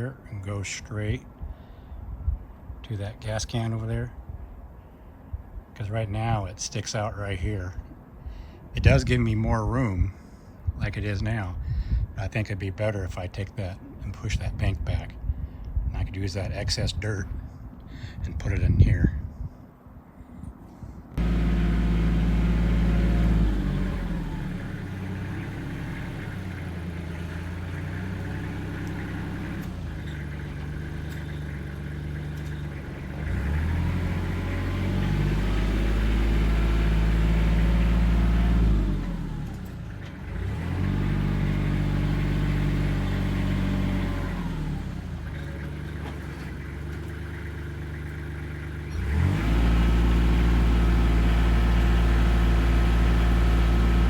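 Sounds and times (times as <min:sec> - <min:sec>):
machine engine running under load: 0:21.2 - 0:54.0.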